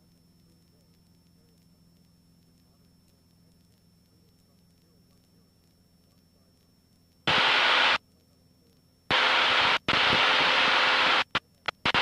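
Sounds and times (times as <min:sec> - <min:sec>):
radio static hiss bursts: 0:07.2 - 0:08.1, 0:08.7 - 0:12.0.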